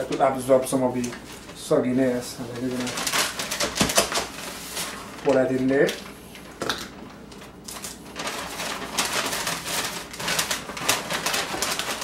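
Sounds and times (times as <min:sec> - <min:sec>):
paper bag crinkling: 0:00.0 - 0:12.0
popcorn kernels poured into bag: 0:07.8 - 0:12.0.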